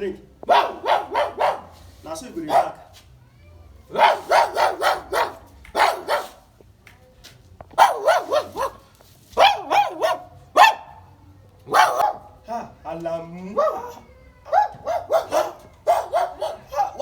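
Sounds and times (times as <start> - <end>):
man barking like a dog: 0.4 - 2.9, 3.9 - 6.4, 7.8 - 8.8, 9.4 - 11.0, 11.7 - 12.4, 13.5 - 17.0.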